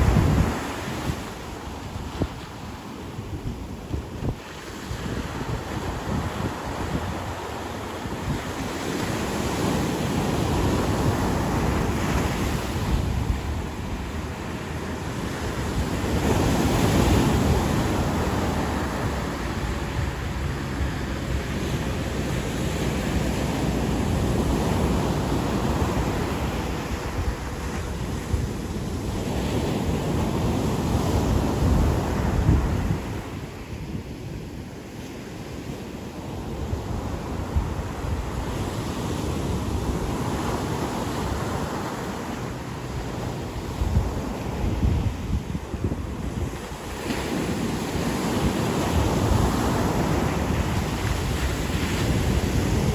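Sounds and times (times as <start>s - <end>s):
surf breaking on beach: 0.0s - 33.7s
wind buffeting microphone: 0.0s - 52.9s.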